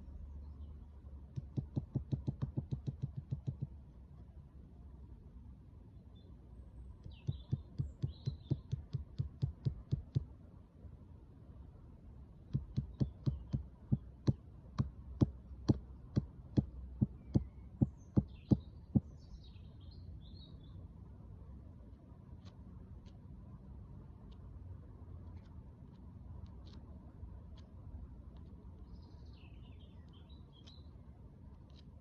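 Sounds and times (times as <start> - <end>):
small birds chirping: 0.0 - 3.7, 5.9 - 10.3, 12.4 - 32.0
rapid sharp taps: 1.3 - 3.8, 7.0 - 10.3, 12.5 - 19.2.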